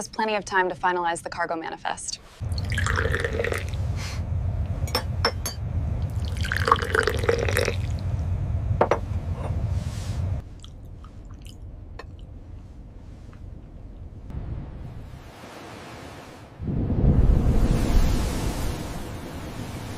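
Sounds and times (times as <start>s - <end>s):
steady low rumble: 2.2s - 19.9s
water splashing and dripping: 2.4s - 3.7s.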